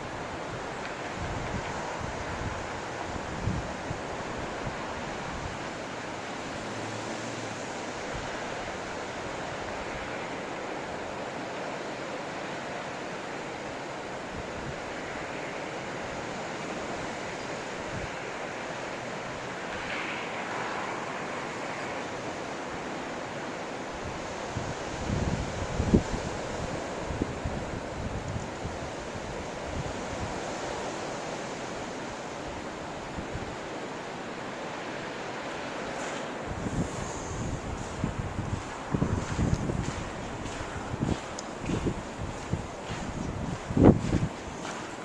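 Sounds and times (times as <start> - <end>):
wind buffeting microphone: 0.0 - 5.9, 23.9 - 30.7, 35.9 - 45.0
blizzard wind blowing: 0.0 - 45.0.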